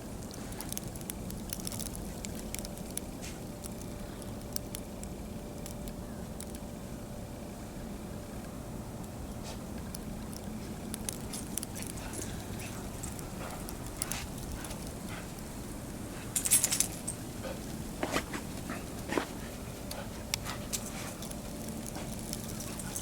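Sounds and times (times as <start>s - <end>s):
steady background hiss: 0.0s - 23.0s
dogs playing in snow: 10.4s - 23.0s.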